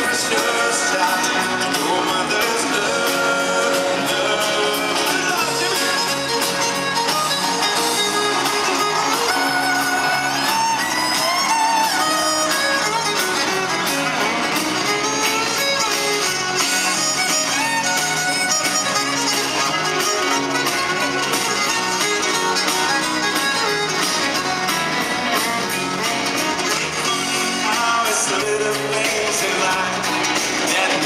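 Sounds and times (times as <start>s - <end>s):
person singing: 0.0s - 10.6s, 27.0s - 31.0s
fiddle: 0.0s - 31.0s
guitar: 0.0s - 31.0s.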